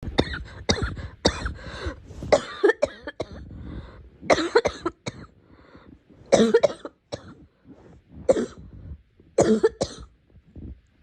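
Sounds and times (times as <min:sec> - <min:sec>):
girl coughing: 0:00.2 - 0:01.6, 0:02.3 - 0:03.5, 0:04.3 - 0:05.4, 0:06.3 - 0:07.4, 0:08.3 - 0:08.7, 0:09.4 - 0:10.1.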